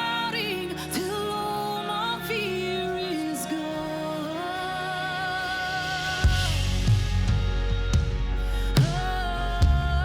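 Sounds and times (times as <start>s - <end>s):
sustained chords over bass: 5.2s - 10.0s.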